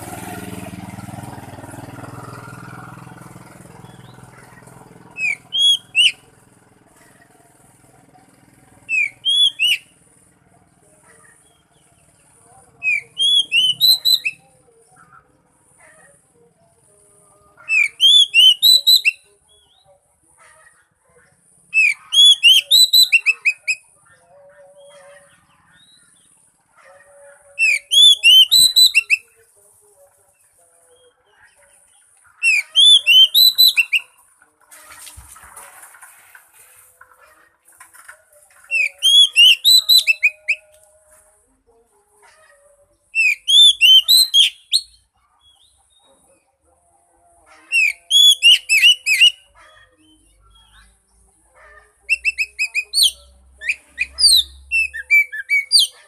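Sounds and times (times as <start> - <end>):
magpie-robin song: 3.8 - 6.3, 8.8 - 10.0, 10.9 - 16.8, 17.5 - 20.9, 21.6 - 29.5, 30.4 - 34.3, 38.6 - 41.0, 41.8 - 46.6, 47.6 - 56.0.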